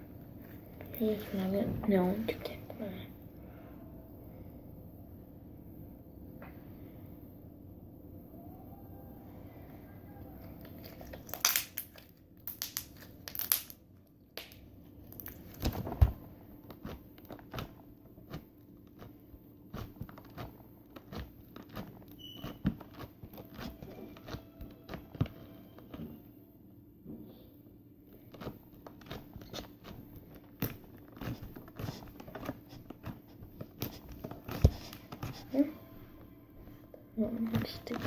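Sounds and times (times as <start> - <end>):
slime squishing with clicking pops: 28.3 - 35.4.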